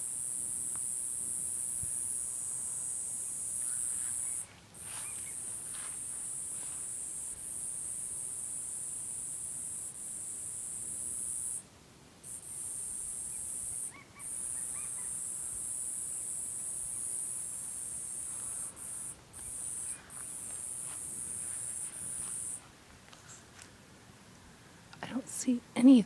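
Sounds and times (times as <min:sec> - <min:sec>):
high-pitched insect buzz: 0:00.0 - 0:11.6, 0:12.3 - 0:22.7
faint bird chirps: 0:03.6 - 0:05.5, 0:13.2 - 0:15.6.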